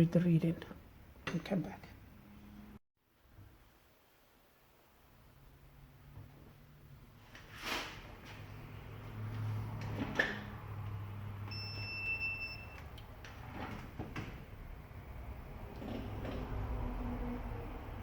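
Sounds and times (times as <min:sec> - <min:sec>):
multimeter beep: 0:11.5 - 0:12.8.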